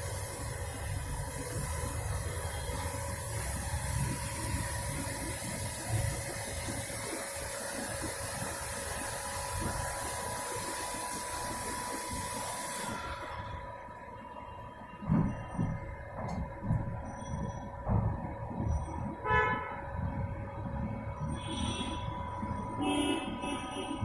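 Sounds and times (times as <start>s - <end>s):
machine hiss: 0.0s - 14.1s
faint machine whine: 0.0s - 24.0s
low machine rumble: 0.0s - 24.0s.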